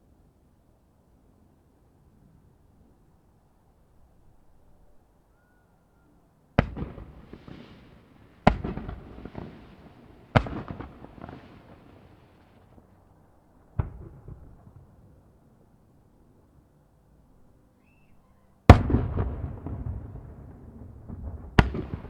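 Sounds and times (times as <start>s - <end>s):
firework crackling: 6.6s - 12.8s, 18.7s - 22.0s.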